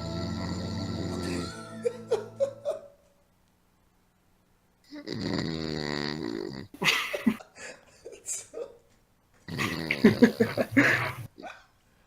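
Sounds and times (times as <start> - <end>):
person snoring loudly: 0.0 - 1.8, 4.9 - 6.8, 9.5 - 11.3.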